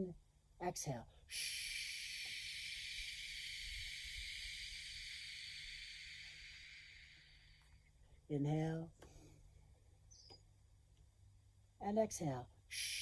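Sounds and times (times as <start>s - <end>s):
person exhaling shhh: 1.3s - 7.8s, 12.7s - 13.0s.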